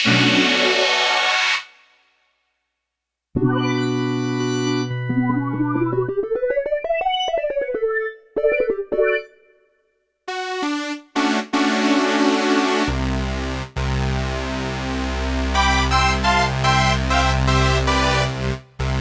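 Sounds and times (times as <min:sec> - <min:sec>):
synthesizer sustained chords: 0:00.0 - 0:01.7, 0:14.2 - 0:18.6
electric piano run and chords: 0:03.4 - 0:09.3, 0:10.3 - 0:13.6
deep synth bass: 0:12.9 - 0:19.0.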